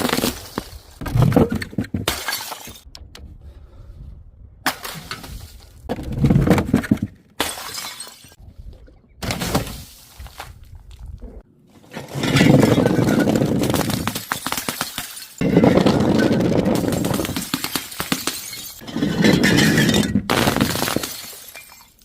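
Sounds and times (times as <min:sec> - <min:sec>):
glass bottles smashing: 0:02.1 - 0:02.8, 0:07.4 - 0:08.4, 0:12.1 - 0:22.0.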